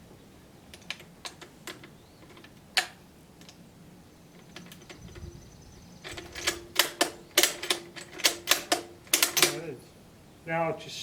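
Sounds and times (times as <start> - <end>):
rifle action metal clicks: 6.0 - 9.7.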